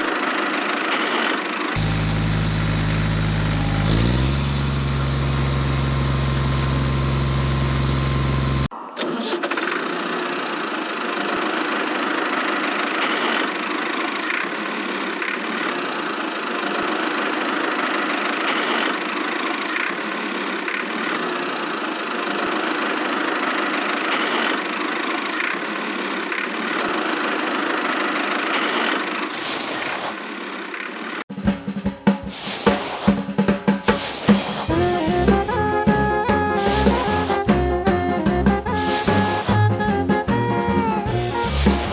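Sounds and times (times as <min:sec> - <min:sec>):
small motor running: 0:01.8 - 0:08.7.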